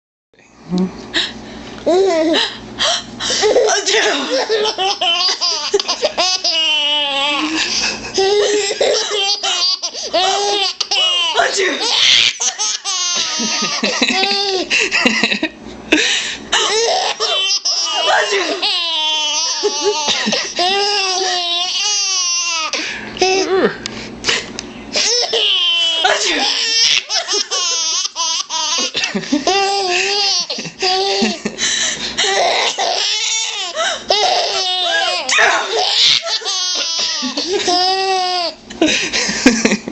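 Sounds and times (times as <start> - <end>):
baby laughing: 3.3 - 14.7, 16.6 - 23.4, 25.0 - 31.5, 32.2 - 38.6
person sneezing: 35.3 - 35.8.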